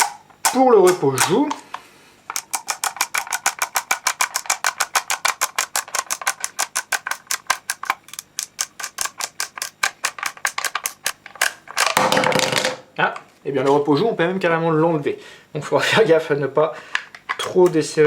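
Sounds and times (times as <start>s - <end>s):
adjustment wheel clicking: 2.3s - 11.6s.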